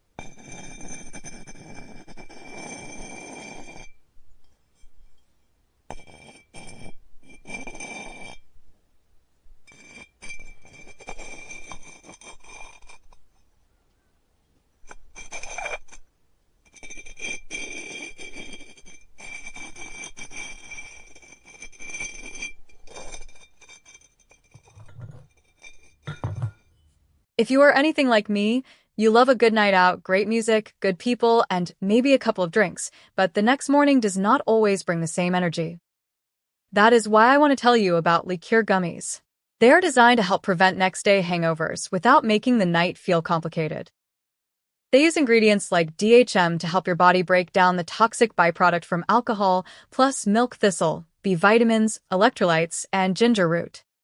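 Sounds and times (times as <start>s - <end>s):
clay rubbing: 0.2s - 8.7s, 9.4s - 26.9s.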